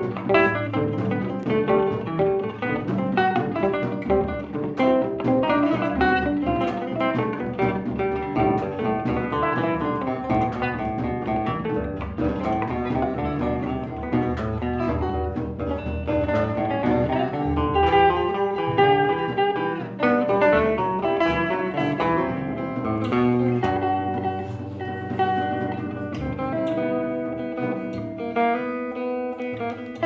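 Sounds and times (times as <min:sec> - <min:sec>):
plucked string instrument music: 0:00.0 - 0:30.0.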